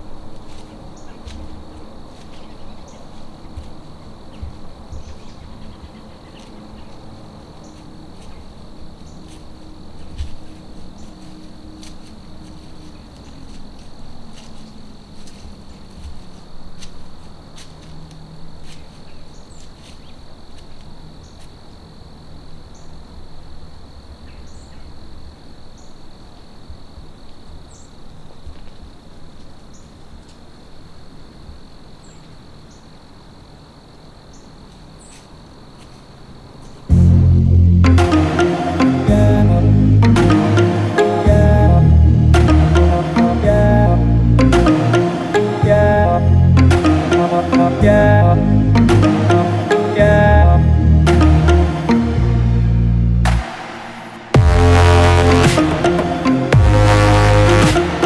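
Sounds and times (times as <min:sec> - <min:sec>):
crickets and insects chirping: 0:00.0 - 0:58.0
low rumble: 0:36.9 - 0:38.2.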